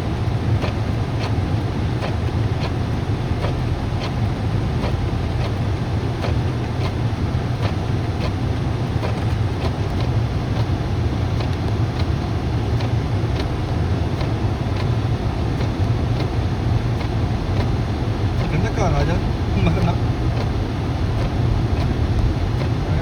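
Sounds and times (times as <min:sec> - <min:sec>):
car driving rumble from inside: 0:00.0 - 0:23.0
faint regular tick: 0:11.4 - 0:12.2, 0:12.8 - 0:15.0, 0:18.4 - 0:20.5, 0:21.2 - 0:22.8.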